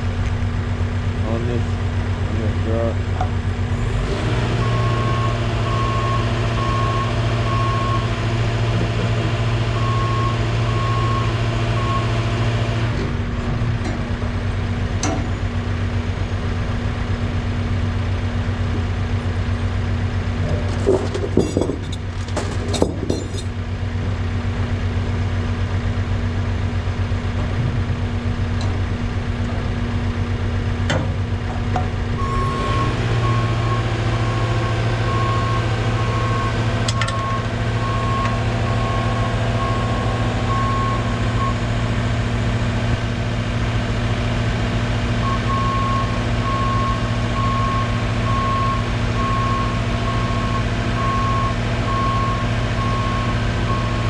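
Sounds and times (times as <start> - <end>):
diesel engine running: 0.0 - 54.0
metallic clanks: 20.5 - 23.6.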